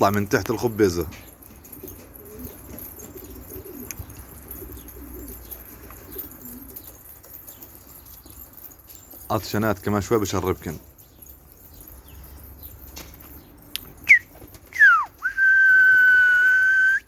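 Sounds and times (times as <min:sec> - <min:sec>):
pigeons cooing: 0:01.1 - 0:09.2.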